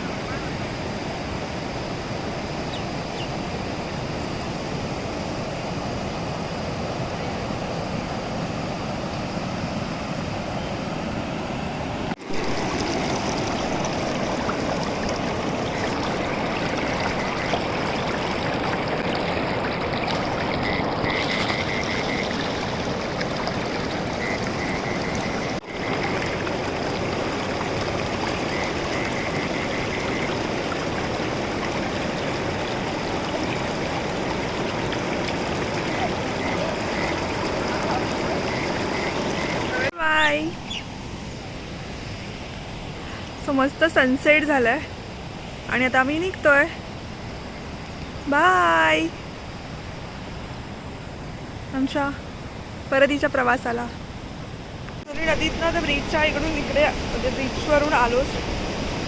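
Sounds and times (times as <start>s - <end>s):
river water rushing: 0.0s - 39.9s, 54.1s - 59.0s.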